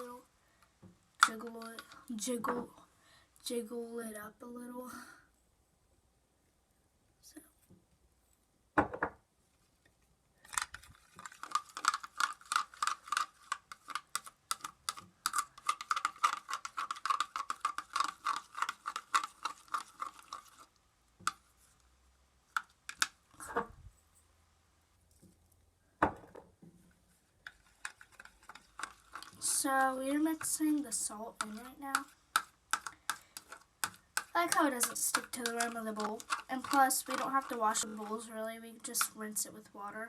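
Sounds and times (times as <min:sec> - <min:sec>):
stirring scraping against bowl: 0:01.2 - 0:02.1, 0:10.5 - 0:21.9, 0:27.2 - 0:39.8.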